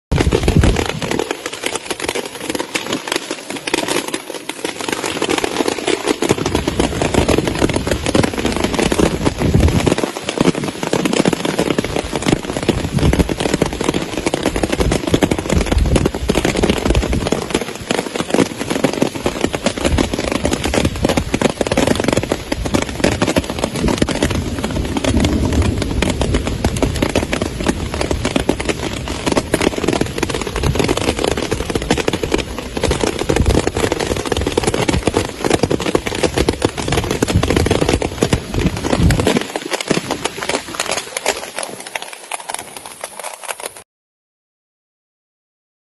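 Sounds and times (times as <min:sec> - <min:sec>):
hailstones pelting: 0:00.1 - 0:43.8
low rumble: 0:23.8 - 0:28.2.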